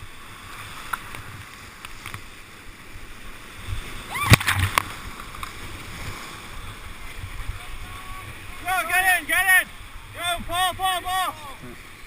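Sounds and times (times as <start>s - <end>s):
paddle knocks and splashes: 3.7s - 6.2s.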